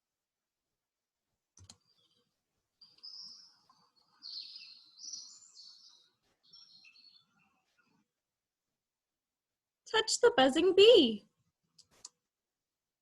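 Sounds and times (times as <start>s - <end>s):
birds chirping: 1.8s - 8.2s.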